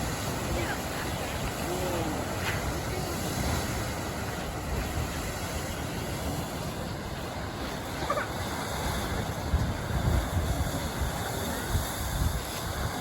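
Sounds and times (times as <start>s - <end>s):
waves washing on shore: 0.0s - 13.0s
wind rumbling on microphone: 0.0s - 13.0s.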